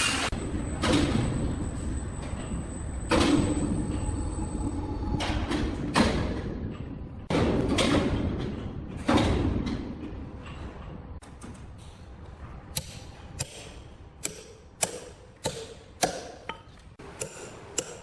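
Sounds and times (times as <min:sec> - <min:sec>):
low steady machine hum: 0:00.4 - 0:07.3.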